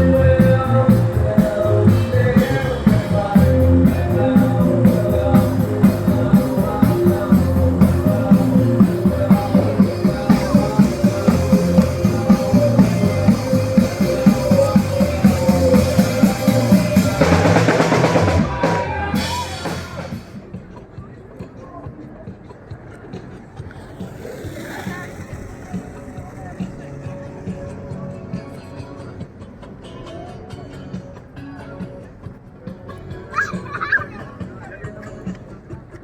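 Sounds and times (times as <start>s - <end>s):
rock music with drum beat: 0.0s - 20.7s.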